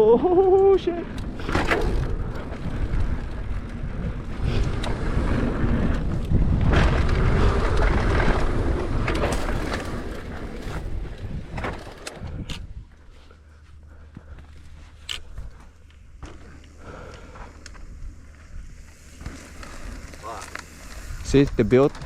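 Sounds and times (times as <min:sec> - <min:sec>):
tyres rolling on dirt: 0:00.6 - 0:22.0
wind rushing over microphone: 0:00.9 - 0:13.1, 0:20.8 - 0:22.0.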